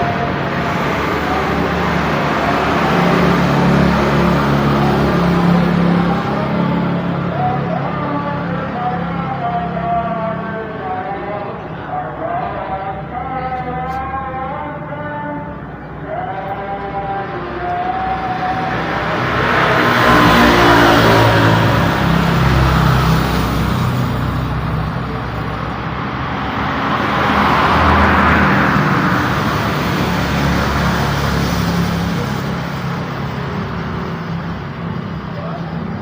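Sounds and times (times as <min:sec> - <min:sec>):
vehicles passing: 0:00.0 - 0:36.0.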